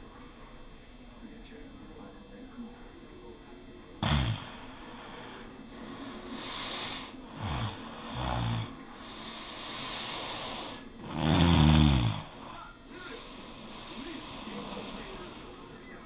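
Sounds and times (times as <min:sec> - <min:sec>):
person snoring: 0:04.0 - 0:12.6, 0:13.2 - 0:15.8.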